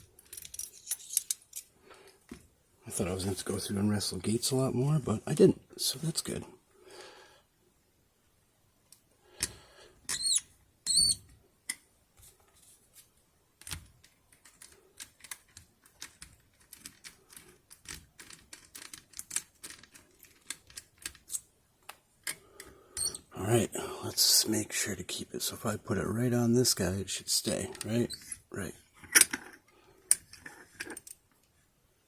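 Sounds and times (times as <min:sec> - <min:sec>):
short squeaks: 0:10.1 - 0:11.2, 0:23.0 - 0:23.3.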